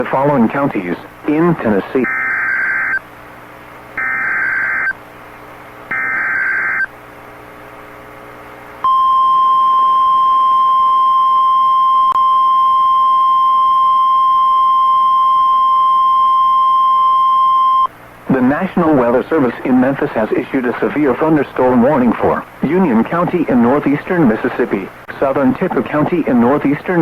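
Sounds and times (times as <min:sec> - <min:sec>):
steady warning alarm tone: 0:02.0 - 0:03.0, 0:04.0 - 0:05.0, 0:05.9 - 0:06.9.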